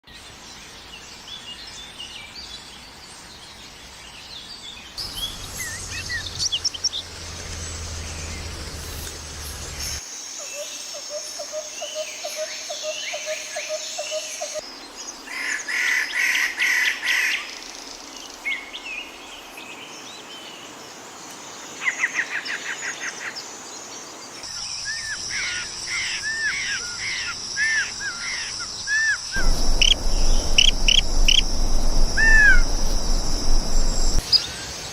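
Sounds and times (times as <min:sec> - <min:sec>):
wild birds singing and calling: 0:00.2 - 0:34.9
high-pitched insect buzz: 0:29.4 - 0:34.2.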